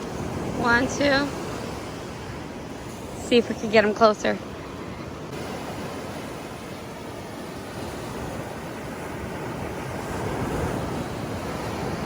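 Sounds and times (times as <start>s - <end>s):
ocean waves: 0.0s - 12.0s
wind: 0.0s - 12.0s.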